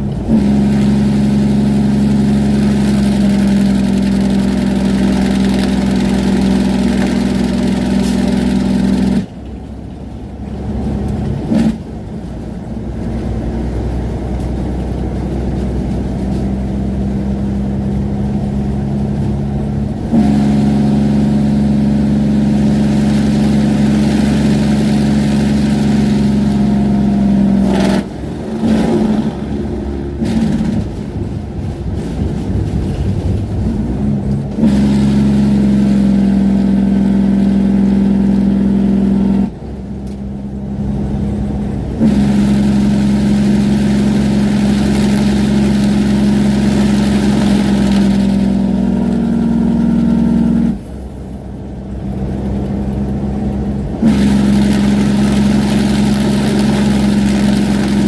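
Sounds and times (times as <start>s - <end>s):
truck engine brake drone: 0.0s - 9.7s, 52.5s - 58.0s
engine and road noise: 0.0s - 58.0s.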